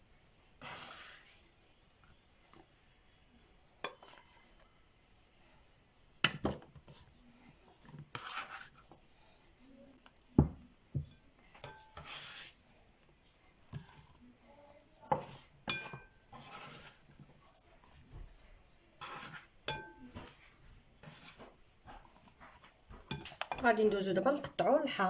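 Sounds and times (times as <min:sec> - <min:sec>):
dishes and utensils clinking: 0:03.8 - 0:04.6, 0:10.4 - 0:12.6, 0:14.9 - 0:18.3, 0:19.0 - 0:25.0.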